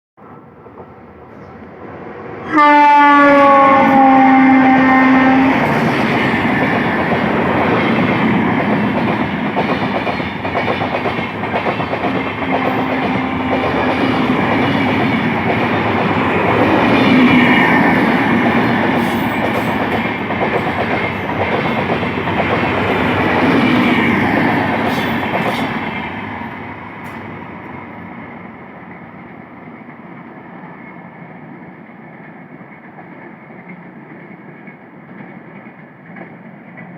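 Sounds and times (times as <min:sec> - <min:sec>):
train horn blast: 0:02.4 - 0:06.0, 0:12.3 - 0:14.9
train wheels rattling over rails: 0:05.2 - 0:28.0.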